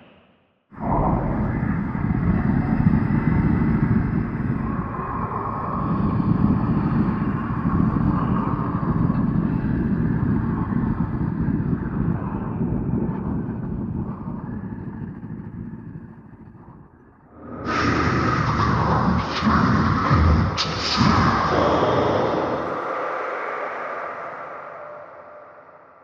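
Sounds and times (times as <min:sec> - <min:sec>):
distorted industrial drone: 0:17.3 - 0:26.0.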